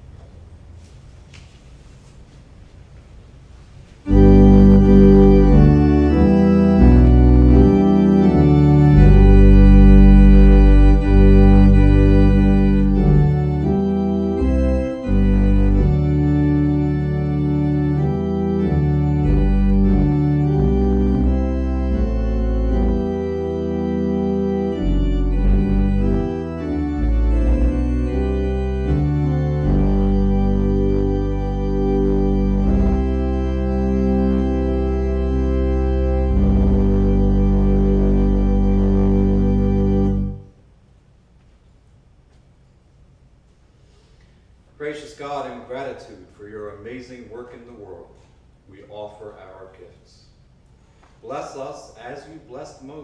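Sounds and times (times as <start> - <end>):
organ playing chords: 4.0 - 40.8.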